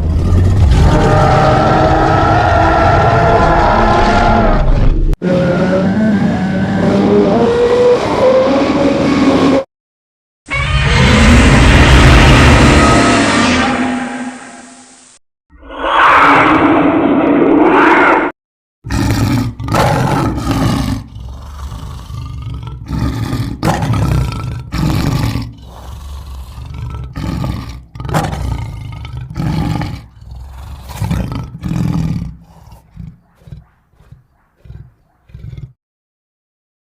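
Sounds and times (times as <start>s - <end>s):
monster roars and growls: 0.0s - 9.6s, 10.5s - 14.6s, 15.6s - 18.3s, 18.9s - 35.8s
monster grunts: 18.9s - 35.8s.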